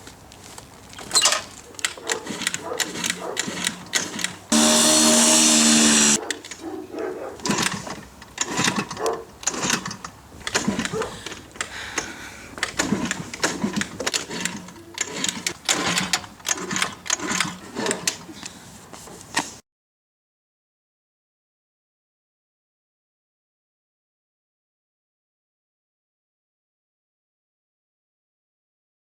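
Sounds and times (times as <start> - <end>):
moped kick-start clattering: 1.1 - 6.6, 7.4 - 18.6
loud steady buzzing tone: 4.5 - 6.2.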